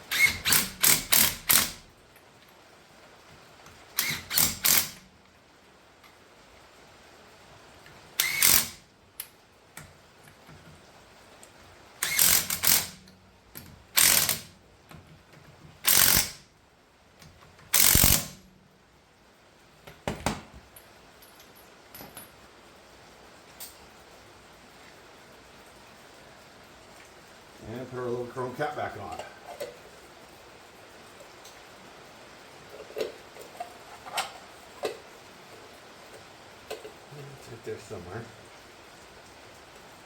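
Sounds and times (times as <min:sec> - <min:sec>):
ratchet wrench clicking: 0:00.1 - 0:01.8, 0:04.0 - 0:05.0, 0:08.2 - 0:08.8, 0:12.0 - 0:13.0, 0:14.0 - 0:14.5, 0:15.8 - 0:16.4, 0:17.7 - 0:18.4.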